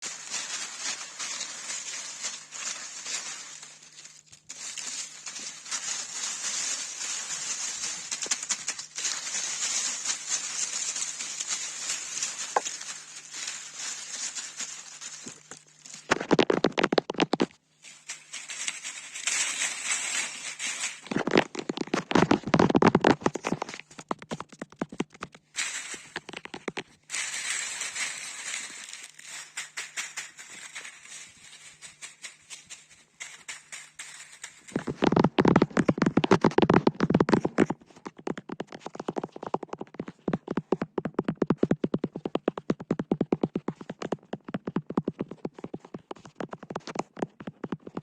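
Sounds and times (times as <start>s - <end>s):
scratching on a stick: 0.0s - 48.0s
fast tapping: 4.6s - 15.5s, 16.1s - 19.7s, 20.4s - 25.4s, 26.0s - 26.9s, 33.2s - 48.0s.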